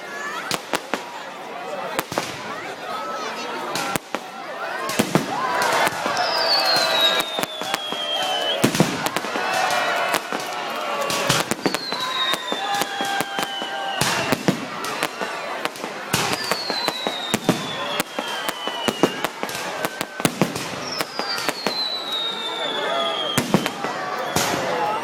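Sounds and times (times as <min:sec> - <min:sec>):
fireworks cracking and popping: 0:00.4 - 0:01.2, 0:01.9 - 0:02.7, 0:03.6 - 0:25.0
high falling firework whistles: 0:04.9 - 0:24.8.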